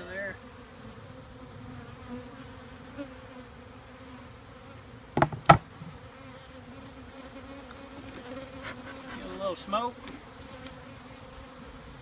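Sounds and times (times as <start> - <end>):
honeybees buzzing: 0.0 - 12.0
sharp knocks: 5.2 - 5.7.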